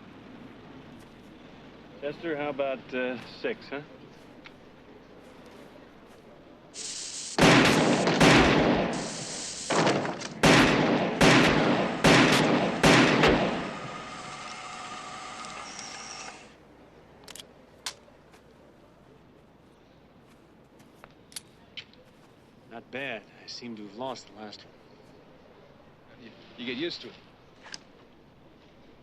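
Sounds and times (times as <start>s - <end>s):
revolver gunshots: 6.8s - 14.4s.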